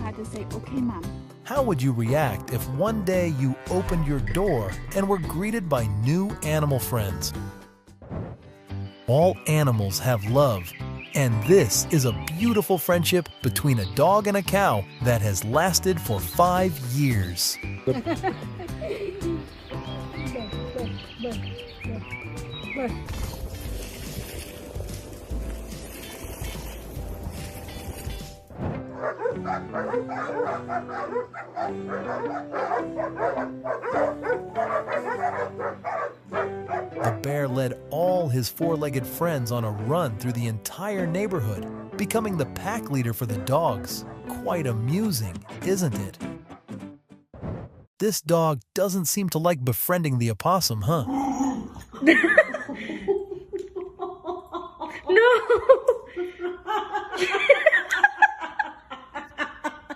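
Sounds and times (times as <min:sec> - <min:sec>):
background music: 0:00.0 - 0:47.3, 0:48.0 - 0:59.9
high giggling: 0:17.8 - 0:19.5, 0:51.8 - 0:59.9
person laughing: 0:17.8 - 0:19.5, 0:51.8 - 0:59.9
dog barking rapidly: 0:28.9 - 0:37.2.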